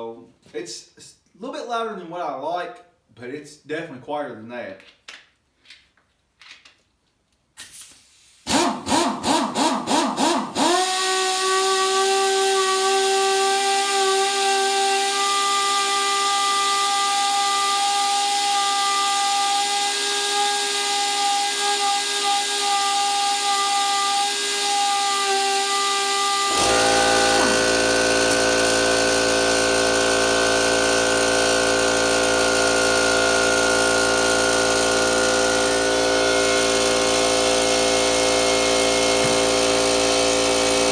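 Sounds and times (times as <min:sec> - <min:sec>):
pneumatic impact wrench whine: 0:07.6 - 0:40.9
air compressor motor humming: 0:08.4 - 0:18.4, 0:26.0 - 0:40.9.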